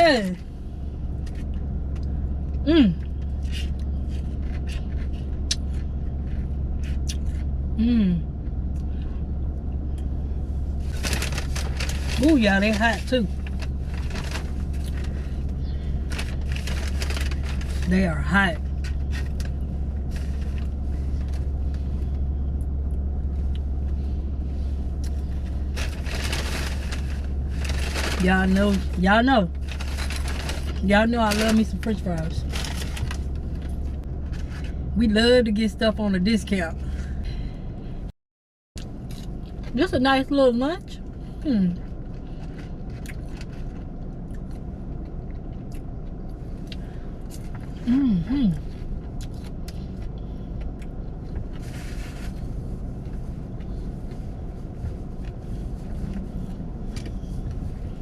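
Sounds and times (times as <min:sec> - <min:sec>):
car engine idling: 0:00.0 - 0:38.1, 0:38.8 - 0:58.0
steady low rumble: 0:00.0 - 0:38.2, 0:38.8 - 0:58.0
chewing french fries: 0:38.8 - 0:39.8, 0:41.7 - 0:47.8, 0:48.5 - 0:51.6.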